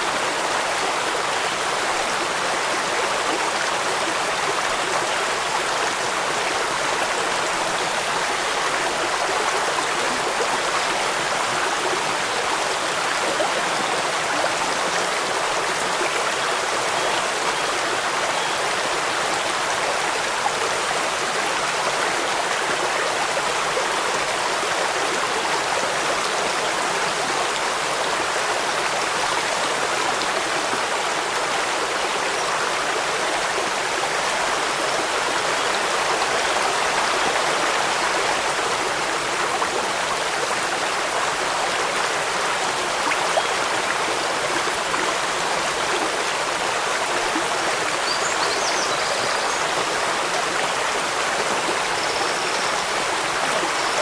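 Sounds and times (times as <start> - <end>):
stream and waterfall rushing: 0.0 - 54.0.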